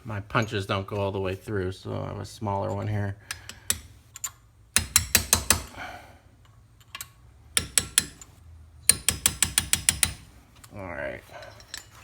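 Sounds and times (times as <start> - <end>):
hammer tapping metal punch: 3.3 - 5.8, 7.0 - 10.3.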